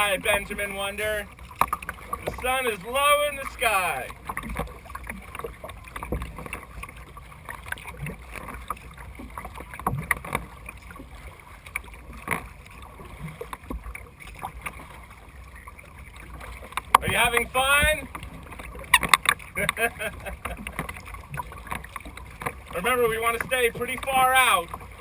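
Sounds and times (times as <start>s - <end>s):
low steady rumble: 0.0s - 14.2s
kayak paddles splashing in water: 0.0s - 25.0s.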